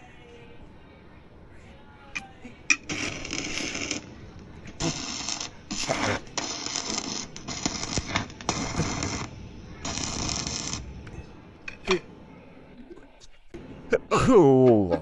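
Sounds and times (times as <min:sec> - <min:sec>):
welding arc crackling and hissing: 0:02.8 - 0:04.1, 0:04.7 - 0:11.0.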